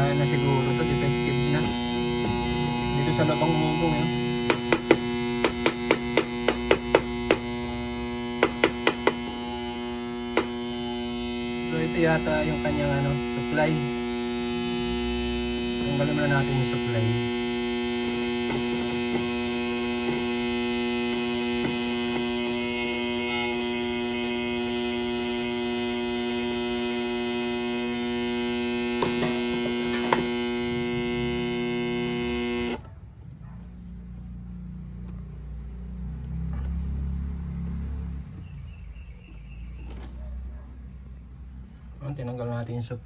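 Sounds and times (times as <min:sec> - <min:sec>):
electrical hum: 0:00.0 - 0:32.8.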